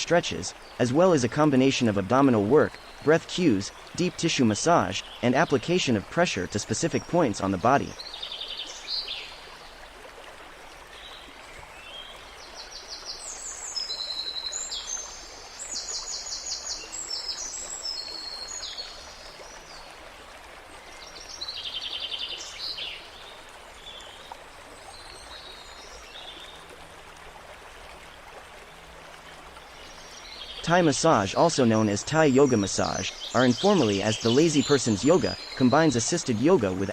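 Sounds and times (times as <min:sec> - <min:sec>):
songbirds chirping in trills: 0:00.0 - 0:09.7, 0:11.0 - 0:19.9, 0:29.4 - 0:36.9
running water rushing: 0:00.0 - 0:36.9.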